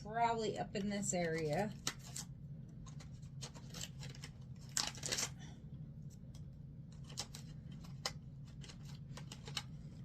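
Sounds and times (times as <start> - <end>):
packaging rustling: 1.3 - 5.4, 6.9 - 10.0.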